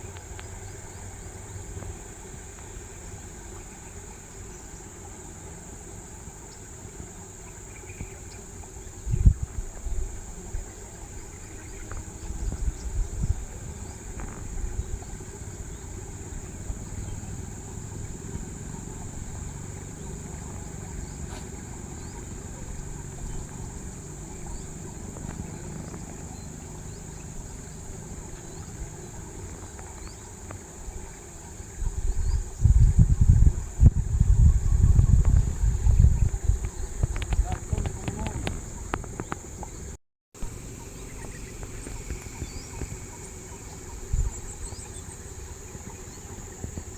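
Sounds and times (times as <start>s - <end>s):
insect chorus: 0.0s - 46.9s.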